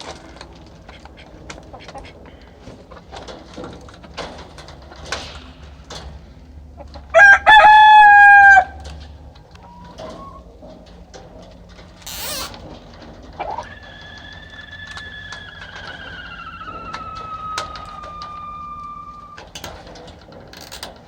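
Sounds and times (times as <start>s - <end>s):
rooster crowing: 7.1s - 8.8s, 13.5s - 19.6s.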